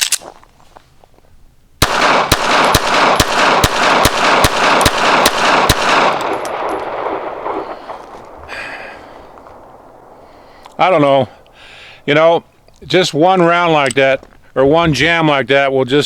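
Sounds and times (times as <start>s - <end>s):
pistol shots: 1.8s - 12.3s.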